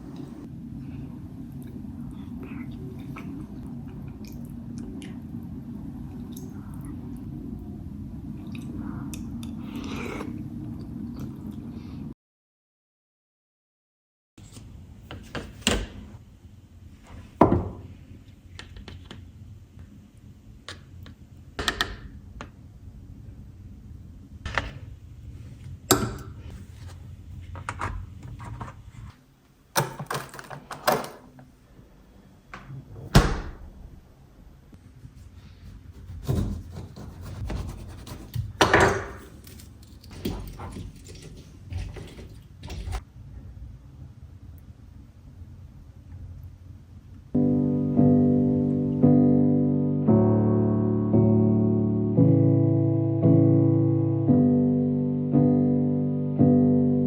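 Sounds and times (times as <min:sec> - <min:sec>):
low room hum: 0:00.0 - 0:12.2, 0:14.4 - 0:49.1
objects knocking and clunking: 0:29.8 - 0:31.4.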